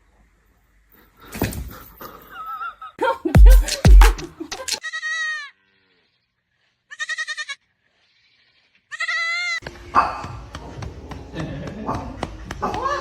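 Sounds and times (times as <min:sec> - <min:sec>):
animal bleating: 0:04.8 - 0:06.0, 0:06.9 - 0:07.7, 0:08.8 - 0:09.6.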